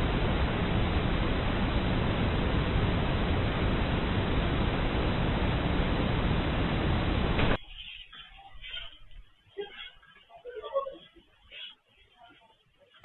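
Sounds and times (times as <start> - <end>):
loud low rushing noise: 0.0 - 7.6.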